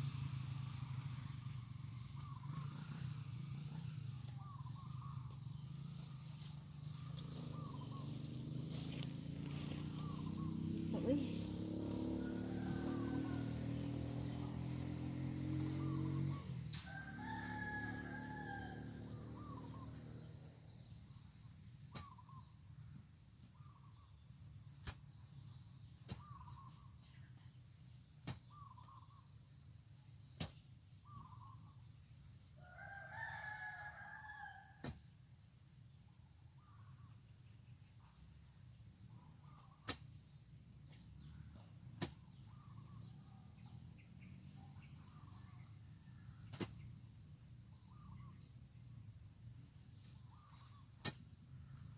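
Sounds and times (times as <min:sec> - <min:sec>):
rooster crowing: 0:11.5 - 0:19.8, 0:32.6 - 0:34.8.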